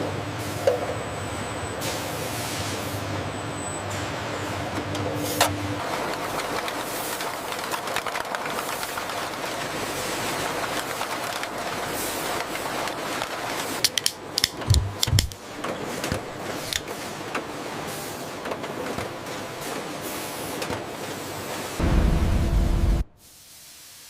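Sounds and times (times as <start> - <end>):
factory machinery noise: 0.0 - 23.3
heavy thumps: 14.6 - 15.4.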